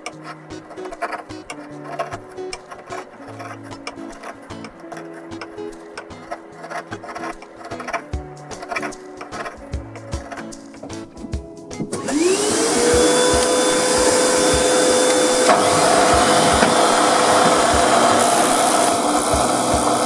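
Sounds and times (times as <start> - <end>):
soft background music: 0.0 - 20.0
electric motor whining: 11.9 - 20.0.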